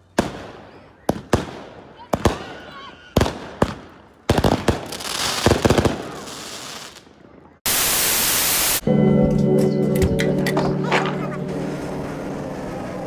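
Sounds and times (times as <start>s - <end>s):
fireworks bangs and crackling: 0.0s - 8.8s
static burst: 7.7s - 8.8s
music: 8.8s - 13.0s.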